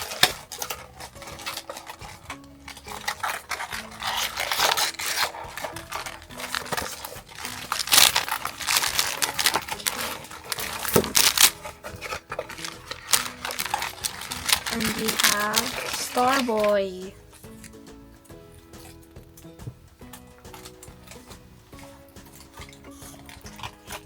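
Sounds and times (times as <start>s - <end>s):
wrapper tearing and crinkling: 0.0s - 17.8s, 20.1s - 24.0s.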